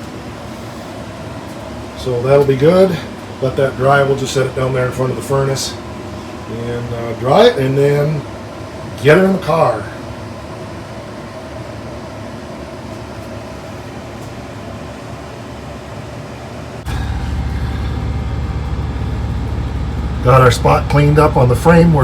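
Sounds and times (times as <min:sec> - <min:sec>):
steady mechanical hum: 0:00.0 - 0:22.0
deep steady rumble: 0:16.9 - 0:22.0.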